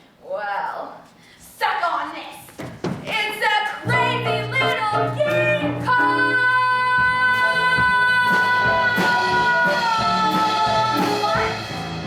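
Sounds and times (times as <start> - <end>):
band accompaniment: 3.9 - 12.0.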